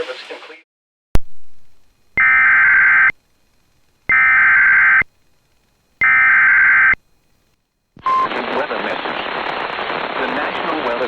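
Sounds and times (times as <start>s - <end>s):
buzzy digital tone bursts: 4.1s - 5.0s.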